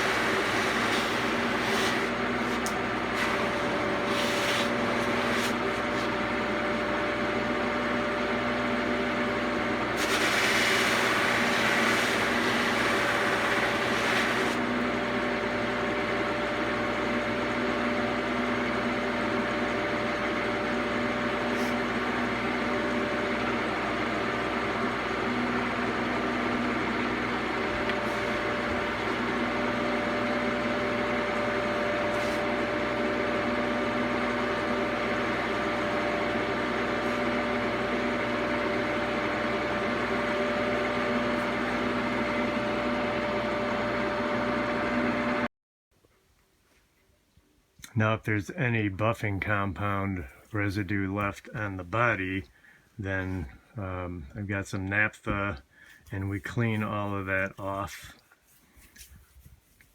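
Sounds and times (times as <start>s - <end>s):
buffing wheel motor hum: 0.0s - 16.0s, 19.0s - 44.6s.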